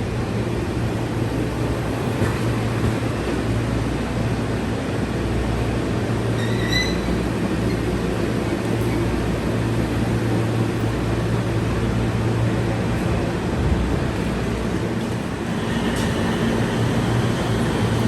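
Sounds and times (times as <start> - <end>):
train low rumble and hum: 0.0 - 18.0.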